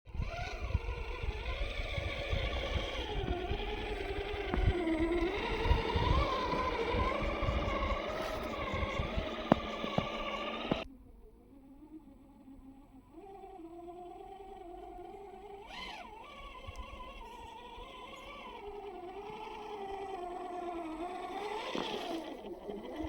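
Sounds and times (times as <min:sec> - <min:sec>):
electric motor whining: 0:00.1 - 0:23.0
rough low rumble: 0:00.8 - 0:10.9.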